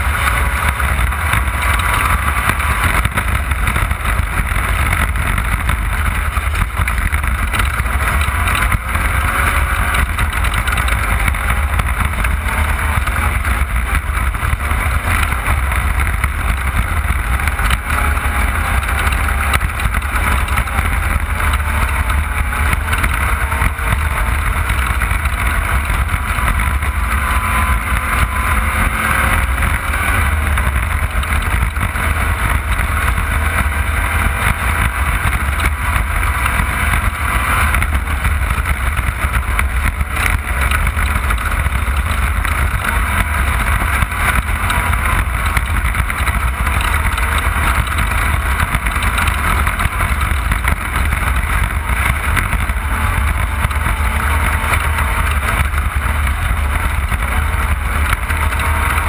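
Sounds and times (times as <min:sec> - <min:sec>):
race car engine under load: 0:00.0 - 0:59.0.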